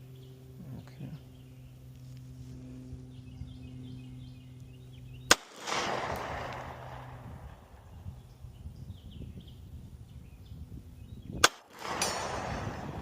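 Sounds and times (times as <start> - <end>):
pistol shot with echo: 5.3 - 7.9, 11.4 - 13.0.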